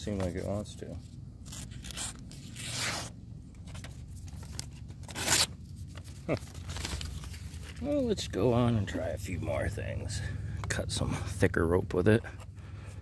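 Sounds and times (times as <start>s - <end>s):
knife tearing through paper: 1.4s - 3.2s, 4.4s - 7.8s.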